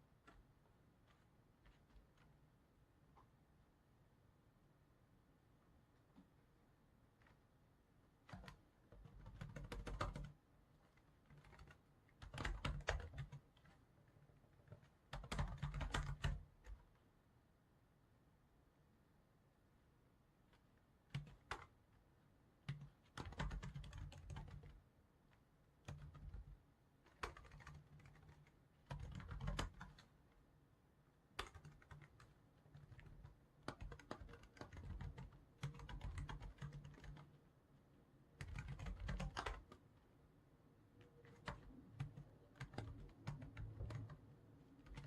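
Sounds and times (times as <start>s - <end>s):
keyboard typing clicks: 27.1s - 30.1s, 31.4s - 37.3s, 38.4s - 39.8s, 41.0s - 44.2s.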